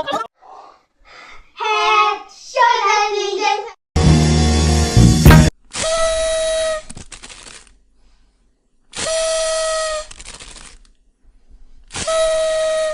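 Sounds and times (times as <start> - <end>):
breathy whistle blasts: 12.0 - 12.9.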